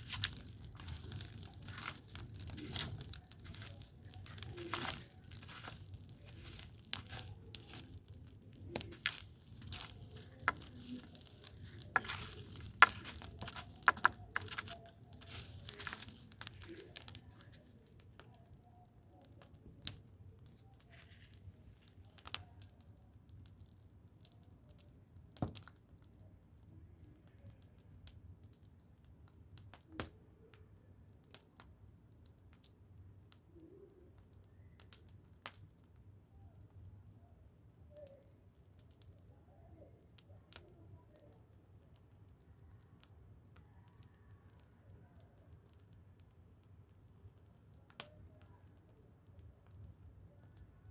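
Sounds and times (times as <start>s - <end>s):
dry material crackling and snapping: 0.0s - 50.9s.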